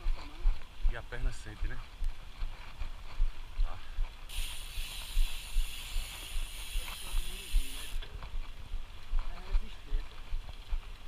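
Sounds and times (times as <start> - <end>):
bicycle freewheel hub buzzing: 4.3 - 8.1.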